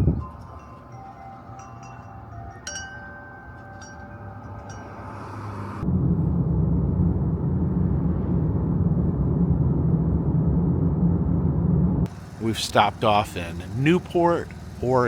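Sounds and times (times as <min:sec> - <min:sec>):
chimes ringing: 0:00.0 - 0:05.6
car engine and road rumble: 0:00.0 - 0:15.0.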